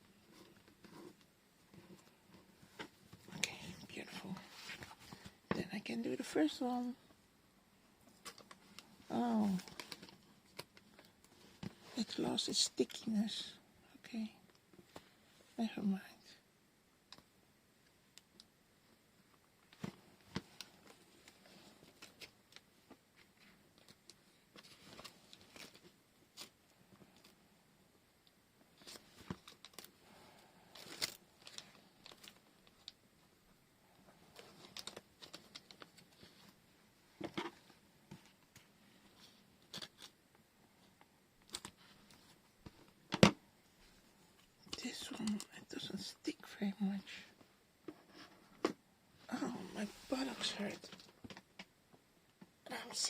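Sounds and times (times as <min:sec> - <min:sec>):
tape rustling and ripping: 0:30.7 - 0:33.0, 0:39.6 - 0:40.2.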